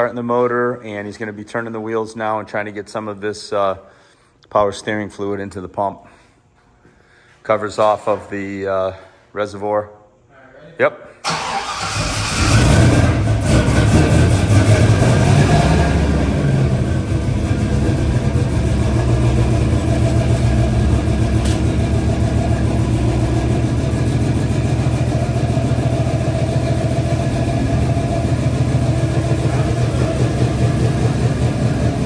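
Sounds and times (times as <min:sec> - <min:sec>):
engine idling: 0:11.3 - 0:32.0.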